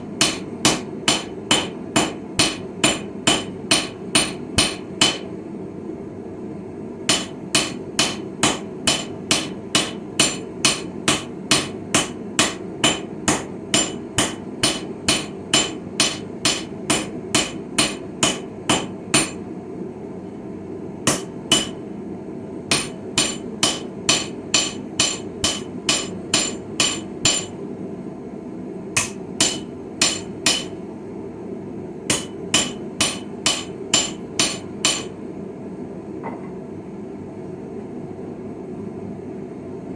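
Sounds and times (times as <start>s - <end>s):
steady low hum: 0.0s - 39.9s
hammer striking steel anvil: 0.2s - 5.3s, 7.1s - 19.4s, 21.1s - 21.8s, 22.7s - 27.6s, 29.0s - 30.8s, 32.1s - 35.2s.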